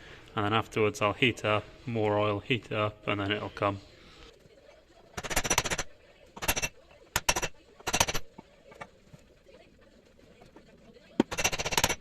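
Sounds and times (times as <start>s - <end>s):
chisel hammering into steel: 5.2s - 8.3s, 11.2s - 12.0s.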